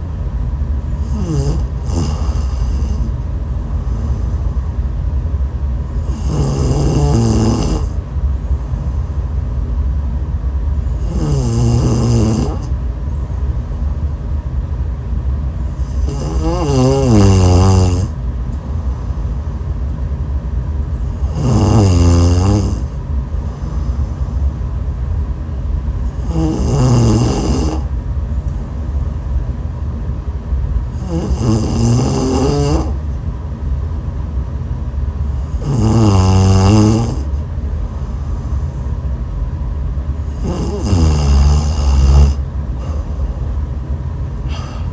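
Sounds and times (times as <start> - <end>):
steady low hum: 0.0 - 44.9
loud rattling snoring: 1.0 - 3.2, 3.8 - 4.4, 5.9 - 8.0, 10.8 - 12.7, 15.7 - 18.2, 21.0 - 24.4, 26.0 - 27.9, 30.9 - 33.0, 35.3 - 37.4, 40.2 - 43.2, 44.4 - 44.9.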